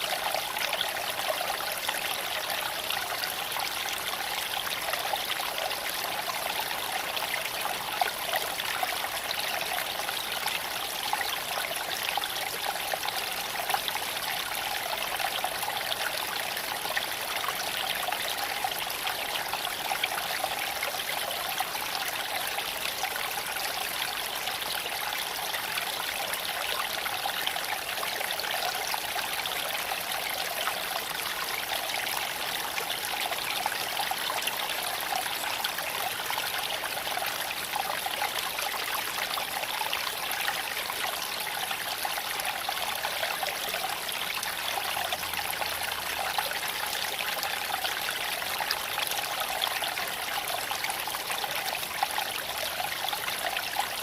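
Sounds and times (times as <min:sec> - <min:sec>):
creek water trickling over stones: 0:00.0 - 0:54.0.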